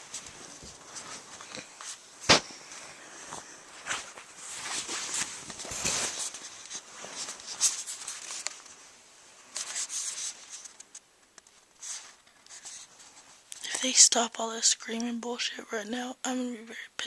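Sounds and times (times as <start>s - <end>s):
rustling and scraping: 0.0s - 13.8s.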